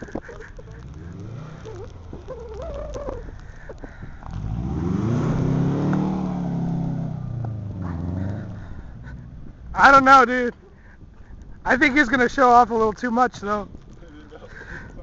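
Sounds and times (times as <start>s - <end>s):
car engine revving hard: 4.2s - 9.4s.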